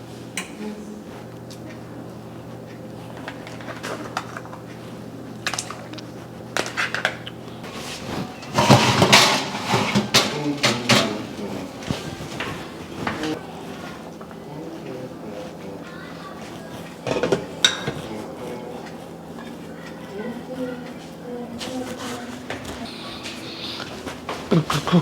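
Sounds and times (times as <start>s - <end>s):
pots and utensils clattering: 3.2s - 4.8s, 5.4s - 14.3s, 16.5s - 20.0s, 21.6s - 25.0s.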